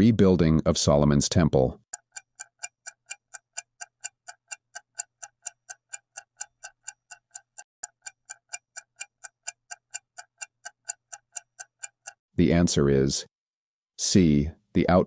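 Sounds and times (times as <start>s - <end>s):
clock ticking: 1.8s - 12.6s.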